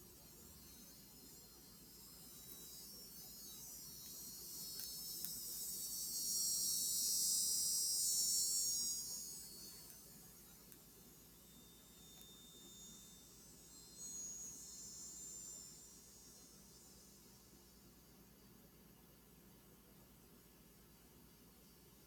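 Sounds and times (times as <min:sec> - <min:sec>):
cicadas buzzing: 0:00.0 - 0:10.4, 0:11.2 - 0:17.1.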